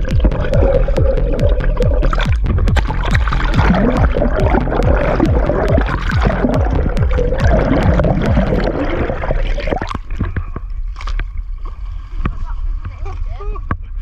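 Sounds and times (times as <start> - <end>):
music with steady beat and bass: 0.0 - 10.2.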